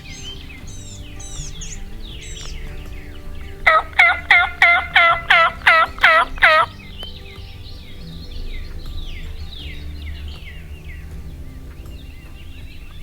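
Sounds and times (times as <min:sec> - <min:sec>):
songbirds chirping: 0:00.0 - 0:13.0
turkey call yelps: 0:03.6 - 0:06.7.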